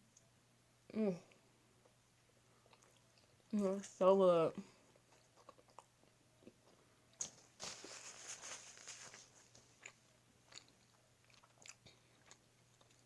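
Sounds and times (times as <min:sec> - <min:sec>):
chewing: 0:02.6 - 0:03.5, 0:04.9 - 0:13.0.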